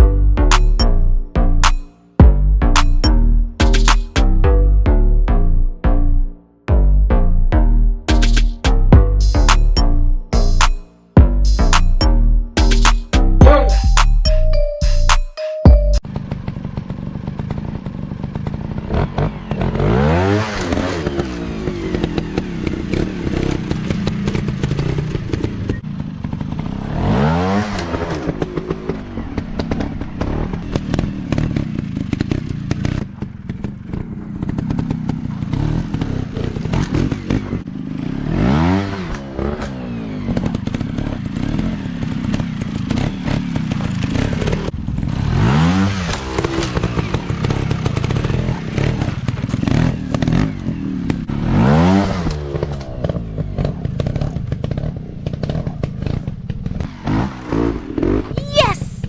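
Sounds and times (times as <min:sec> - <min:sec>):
motorcycle engine revving: 0:16.0 - 0:58.4.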